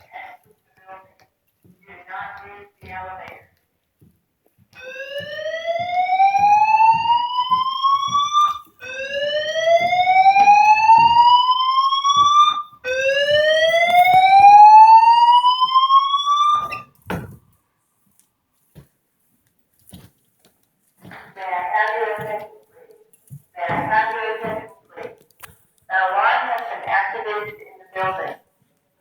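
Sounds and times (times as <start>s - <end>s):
fire alarm rising whoop: 4.8s - 16.9s.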